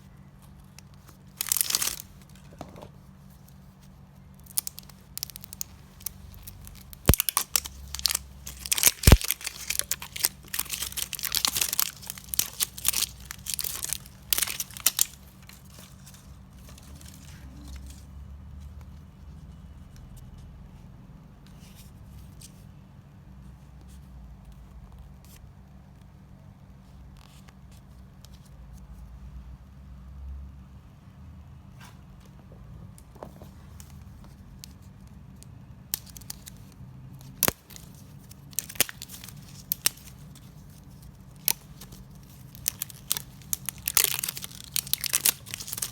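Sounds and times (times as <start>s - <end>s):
plastic wrapping crinkling and tearing: 0.3s - 18.0s, 35.9s - 45.9s.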